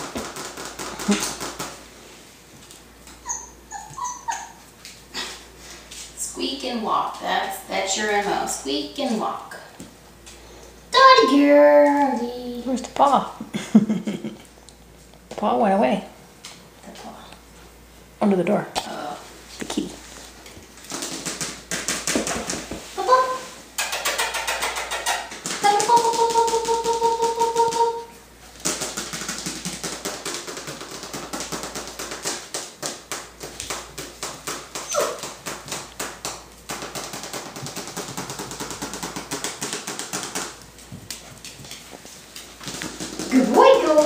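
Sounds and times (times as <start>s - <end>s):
puppies squeaking and whining: 3.2s - 4.7s, 34.8s - 35.4s
puppy yelp: 3.2s - 4.7s, 34.8s - 35.3s
fast clicking and scuffling: 23.8s - 44.0s.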